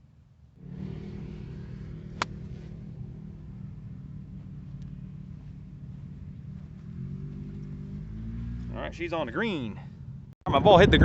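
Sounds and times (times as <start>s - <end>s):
steady low hum: 0.0s - 8.6s
golf club striking ball: 1.9s - 3.1s.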